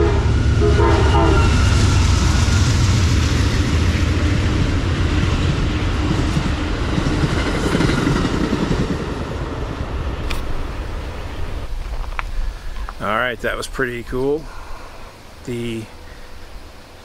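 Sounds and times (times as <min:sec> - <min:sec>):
trains passing at speed: 0:00.0 - 0:17.0.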